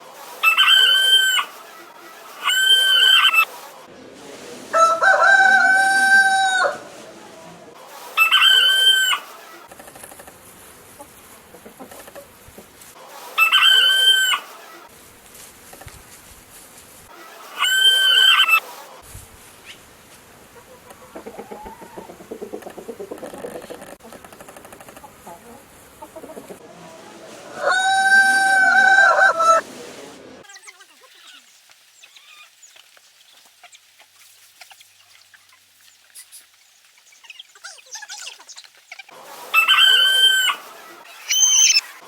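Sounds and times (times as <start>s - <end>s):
rooster crowing: 4.8s - 6.9s, 27.5s - 29.6s, 39.6s - 40.6s.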